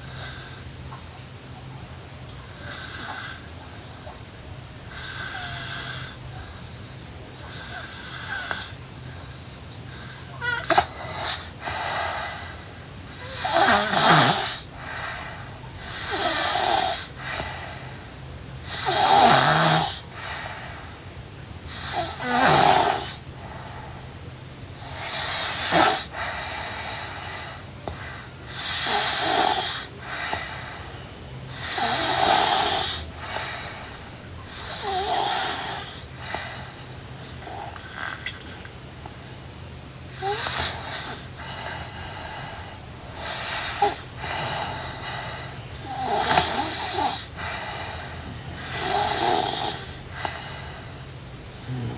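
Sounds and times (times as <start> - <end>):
girl snoring: 4.9 - 6.2, 7.4 - 8.7, 9.9 - 18.0, 18.6 - 21.0, 21.7 - 24.1, 24.8 - 38.3, 40.1 - 51.9.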